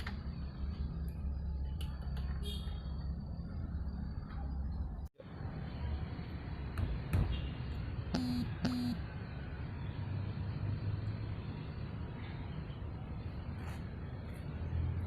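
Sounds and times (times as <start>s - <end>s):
van engine and road rumble: 0.0s - 15.0s
short beeps: 8.2s - 9.0s.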